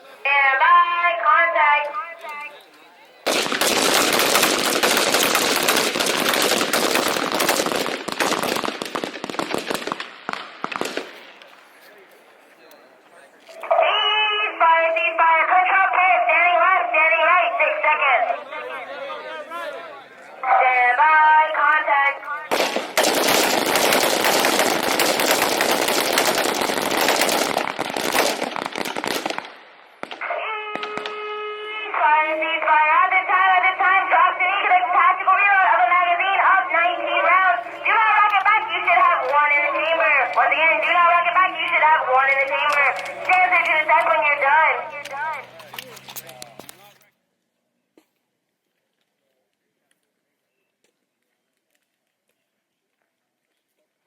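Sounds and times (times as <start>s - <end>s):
rifle gunfire: 3.3s - 11.4s, 22.5s - 31.3s, 37.2s - 45.4s.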